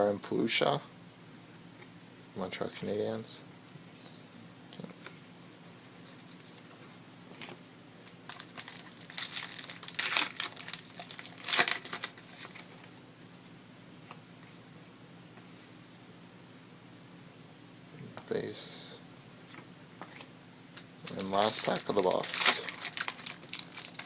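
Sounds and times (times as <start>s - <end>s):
wrapper tearing and crinkling: 8.3s - 12.7s, 21.0s - 24.0s.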